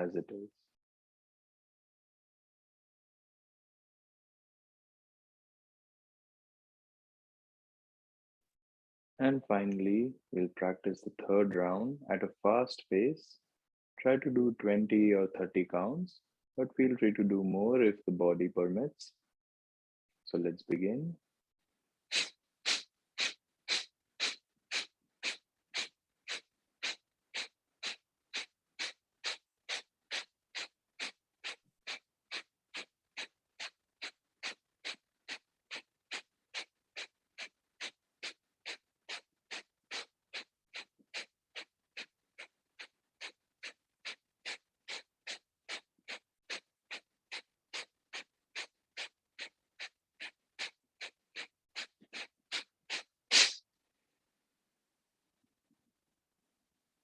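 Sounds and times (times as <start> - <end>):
rapid forceful nasal breaths: 22.1 - 53.6.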